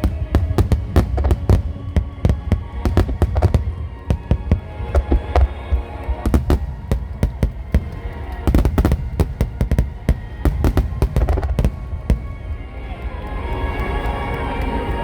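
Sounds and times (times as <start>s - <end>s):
fireworks bursting: 0.0s - 13.5s
music playing: 0.0s - 15.0s.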